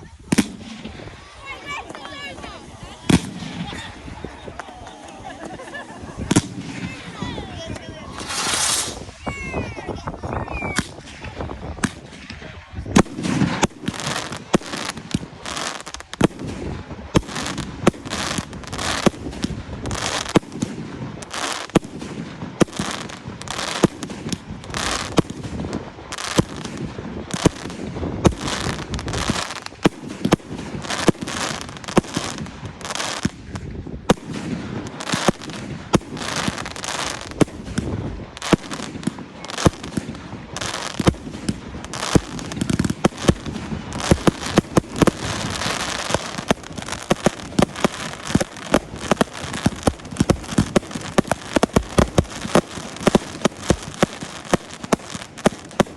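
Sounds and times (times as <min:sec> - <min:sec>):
fireworks bangs and crackling: 0:00.0 - 0:55.9.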